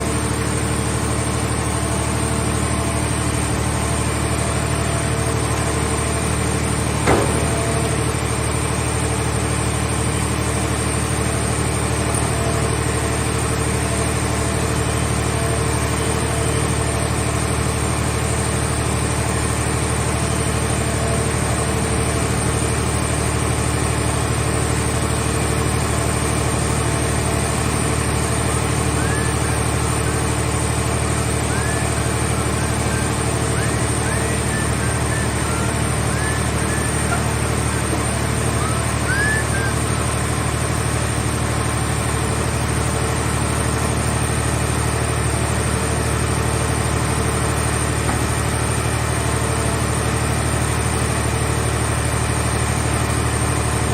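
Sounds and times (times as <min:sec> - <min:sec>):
engine and hydraulic unit running: 0:00.0 - 0:53.9
sharp metallic clank: 0:07.1 - 0:08.1.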